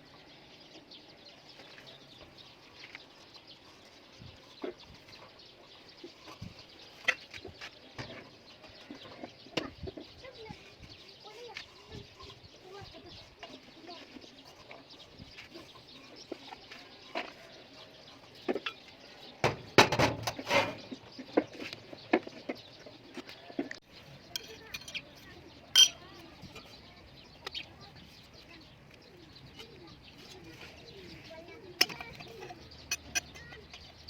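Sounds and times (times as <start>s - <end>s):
hard objects knocking: 24.4s - 26.8s
metallic clinks: 25.8s - 26.1s.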